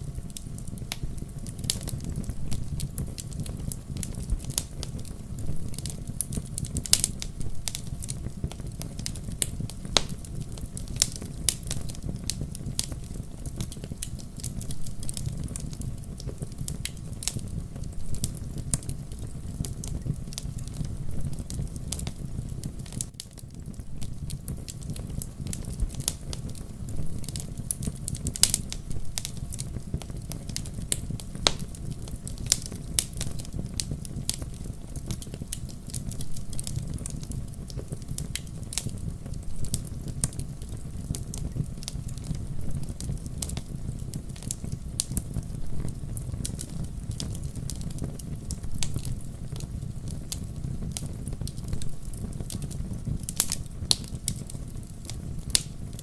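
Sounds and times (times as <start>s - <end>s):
campfire crackling and popping: 0.0s - 56.0s
low rumble of flames: 0.0s - 56.0s.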